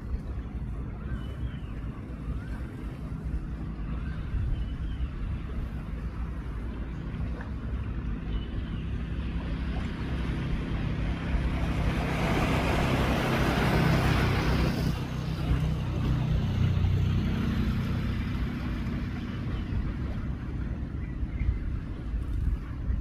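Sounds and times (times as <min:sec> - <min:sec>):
wind rumbling on microphone: 0:00.0 - 0:23.0
waves breaking on shore: 0:09.2 - 0:20.7.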